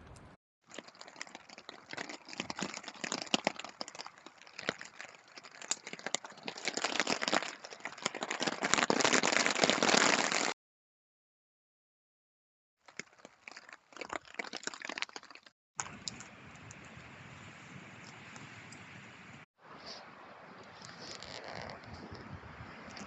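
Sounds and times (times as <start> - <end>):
campfire crackling and popping: 0.7 - 10.6, 13.5 - 18.9, 20.8 - 22.2.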